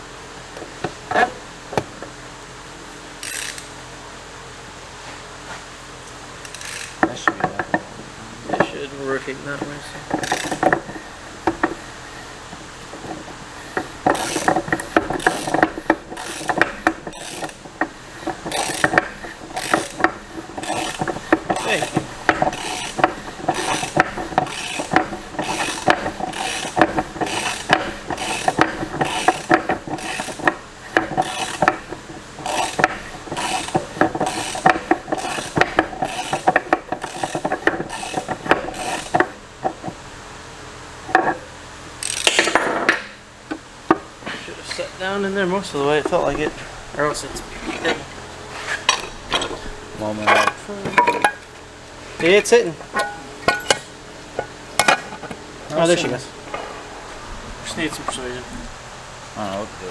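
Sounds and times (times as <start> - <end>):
ratchet wrench clicking: 3.2 - 3.7, 6.4 - 7.1, 10.0 - 11.8, 13.1 - 39.4, 42.0 - 42.6.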